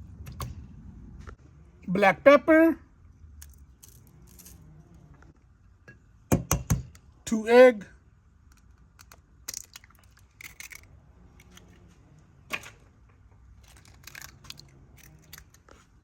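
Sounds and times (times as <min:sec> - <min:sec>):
eggshells cracking: 0:08.5 - 0:11.6, 0:13.5 - 0:16.0.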